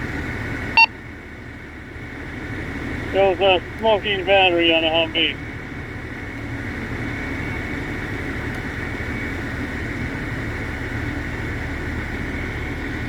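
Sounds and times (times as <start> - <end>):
vehicle engine running: 0.0 - 13.0
constant hiss: 3.1 - 5.4.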